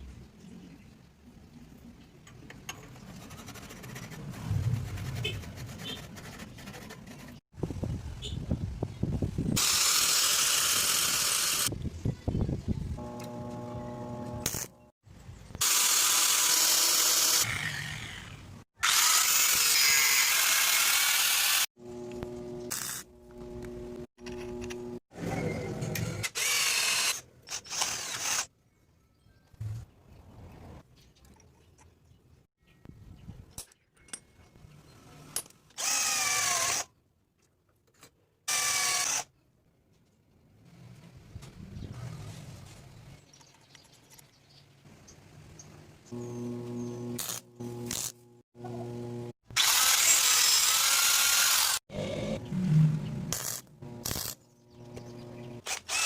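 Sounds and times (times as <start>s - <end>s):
circular saw cutting: 9.6s - 11.7s, 13.0s - 14.9s, 15.6s - 25.0s, 46.1s - 56.0s
steady motor hum: 13.0s - 14.9s, 21.8s - 25.0s, 46.1s - 49.3s, 52.0s - 56.0s.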